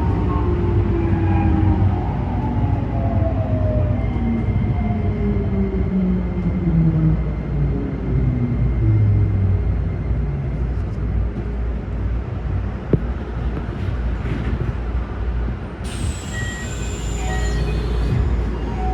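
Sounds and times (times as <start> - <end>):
air hiss with high whistle: 15.9 - 18.3.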